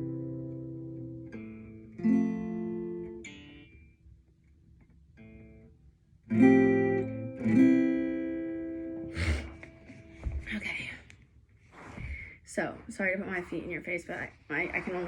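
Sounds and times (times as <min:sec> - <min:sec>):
acoustic guitar chords strummed: 0:06.3 - 0:10.3.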